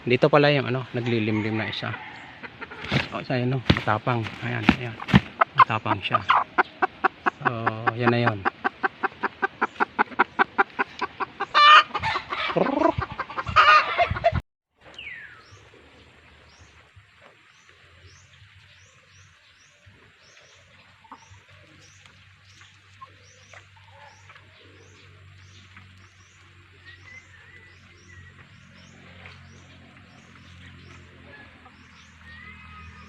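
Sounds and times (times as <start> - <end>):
hen clucking and squawking: 0.8 - 14.4.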